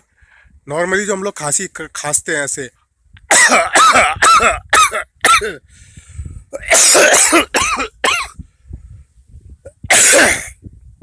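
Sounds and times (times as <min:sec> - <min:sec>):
man coughing: 0:03.3 - 0:05.7, 0:06.5 - 0:08.4, 0:09.7 - 0:10.6.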